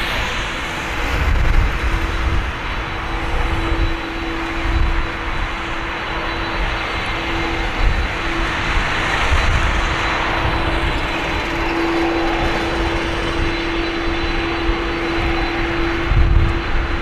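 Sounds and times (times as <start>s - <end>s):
jet engines roaring: 0.0s - 17.0s.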